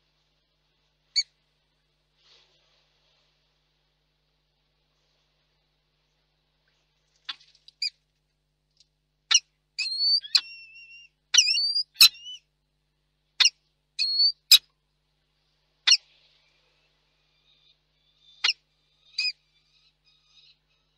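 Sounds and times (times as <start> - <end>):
falcon squeaky calls: 9.3 - 12.4, 13.4 - 14.6, 18.3 - 20.6.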